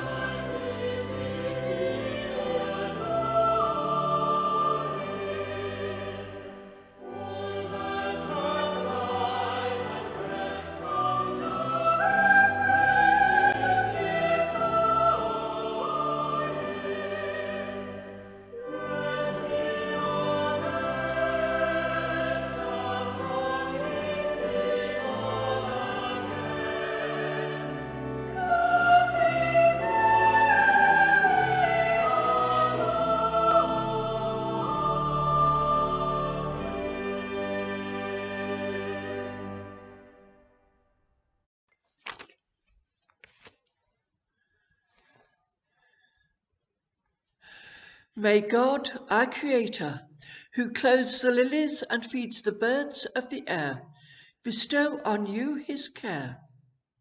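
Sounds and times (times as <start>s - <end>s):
choir singing sacred music: 0.0s - 40.6s.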